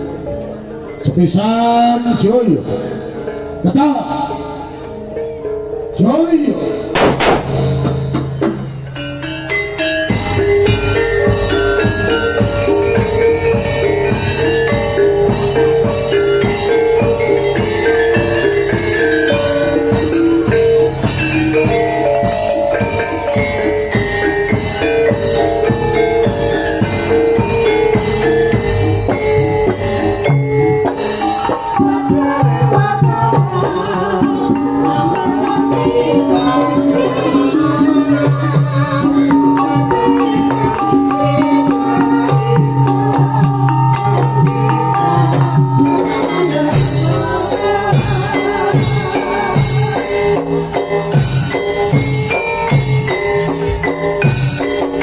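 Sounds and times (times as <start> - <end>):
metal mallet percussion: 6.9 - 33.6, 39.0 - 55.0
drums: 6.9 - 55.0.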